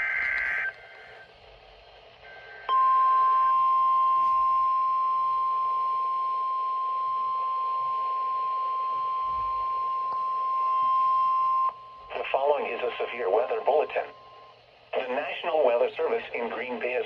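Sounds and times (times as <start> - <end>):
harsh two-tone data warble: 0.0 - 1.3
loud steady high warning tone: 0.0 - 17.0.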